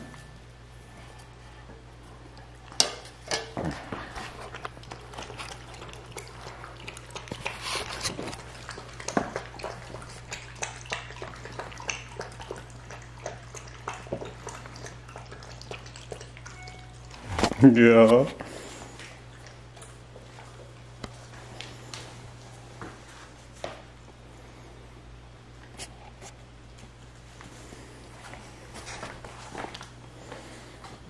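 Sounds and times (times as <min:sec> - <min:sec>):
low hum: 0:00.0 - 0:06.8.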